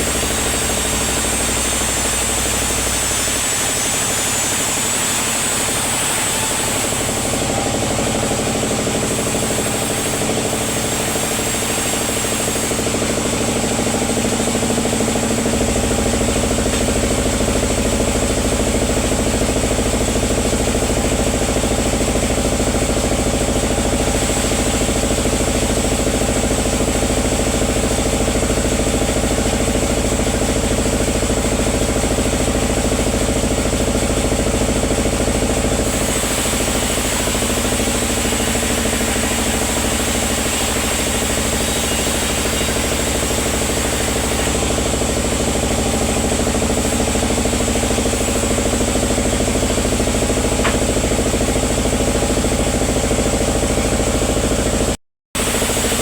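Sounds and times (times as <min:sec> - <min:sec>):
sawmill machinery rumbling: 0:00.0 - 0:56.0.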